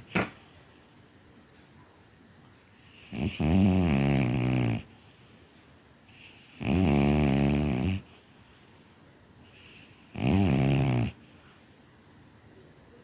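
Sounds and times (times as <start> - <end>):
quiet breathing: 2.6 - 11.9
cat snoring: 2.8 - 4.9, 6.1 - 8.1, 9.5 - 11.2.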